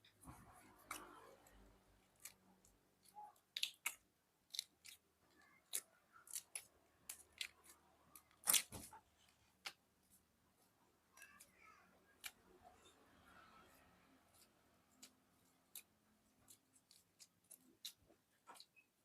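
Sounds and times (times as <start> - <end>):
crisp snaps and clicks: 0.7 - 9.0, 11.2 - 12.9, 14.3 - 19.0.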